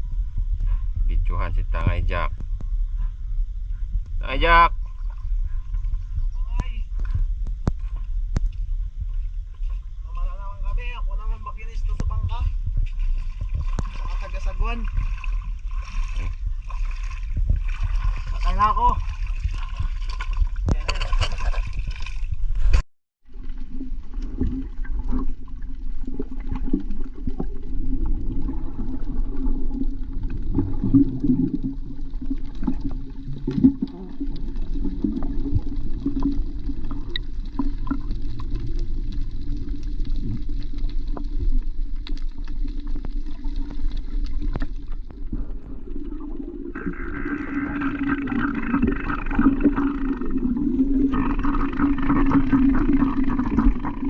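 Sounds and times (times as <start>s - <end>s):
muffled underwater rumble: 0.0s - 54.0s
underwater clicks and knocks: 5.2s - 9.8s, 15.9s - 22.8s, 29.8s - 45.8s.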